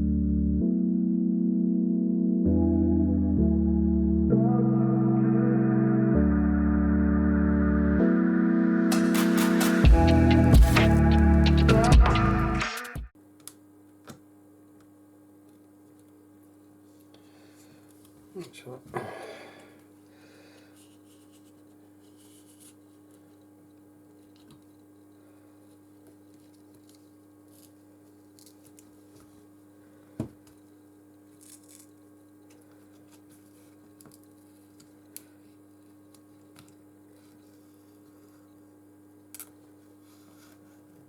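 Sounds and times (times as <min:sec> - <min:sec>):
steady low hum: 0:08.9 - 0:12.6.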